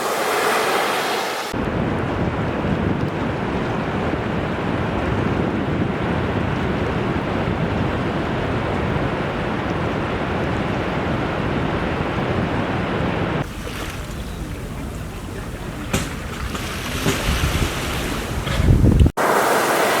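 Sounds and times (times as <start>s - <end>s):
waves breaking: 0.0s - 1.6s, 5.3s - 20.0s.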